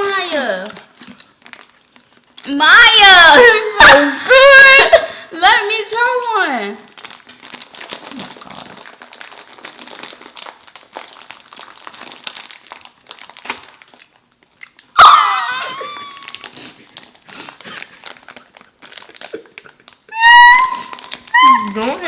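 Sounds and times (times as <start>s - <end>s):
snack wrappers crinkling: 0.0s - 4.7s, 5.8s - 22.0s
loud high-pitched cry: 3.0s - 5.0s, 15.0s - 16.4s, 20.1s - 22.0s.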